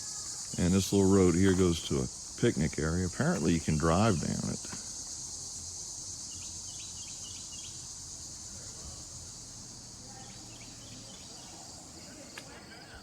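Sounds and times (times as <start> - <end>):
crickets and insects chorus: 0.0 - 13.0.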